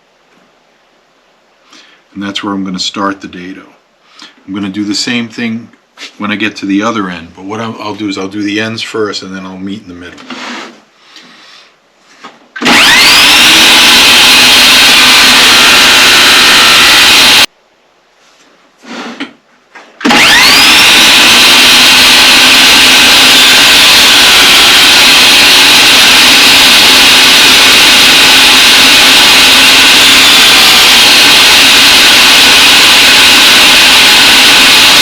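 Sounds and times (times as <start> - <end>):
power saw whining: 12.6 - 17.5, 20.0 - 35.0.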